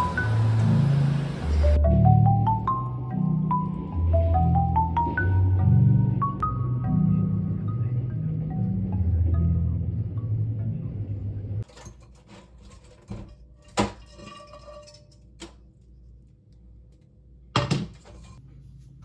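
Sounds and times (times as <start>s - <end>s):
music with mallet tones: 0.0s - 10.6s
kitchen utensils and dishes clinking: 11.6s - 15.6s, 17.6s - 18.4s.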